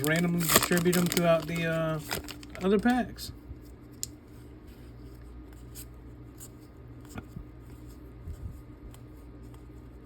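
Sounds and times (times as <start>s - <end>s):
trading cards rustling: 0.0s - 3.2s
low room hum: 0.0s - 10.0s.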